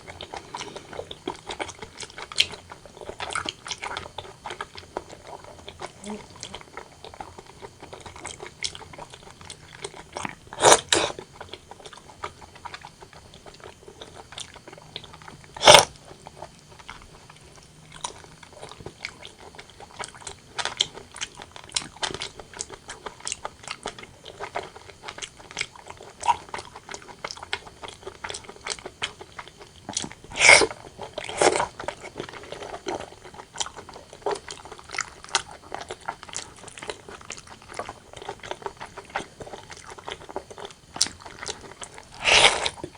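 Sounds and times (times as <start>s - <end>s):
person chewing food: 0.0s - 42.9s
mouth clicks: 10.6s - 11.1s, 15.6s - 15.9s, 30.3s - 30.7s, 42.2s - 42.8s.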